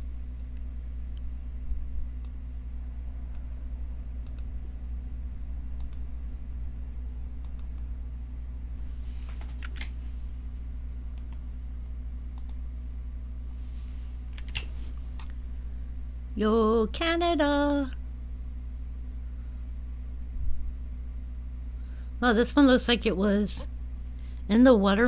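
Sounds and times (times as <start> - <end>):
low electrical hum: 0.0 - 25.0
computer mouse clicks: 4.2 - 4.5, 5.8 - 6.0, 7.4 - 7.8, 9.3 - 10.0, 11.2 - 11.4, 12.4 - 12.6, 14.3 - 15.4.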